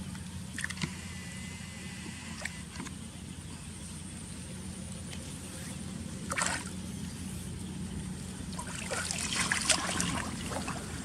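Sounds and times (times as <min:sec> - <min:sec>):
steady low hum: 0:00.0 - 0:11.0
water splashing and sloshing: 0:04.8 - 0:11.0.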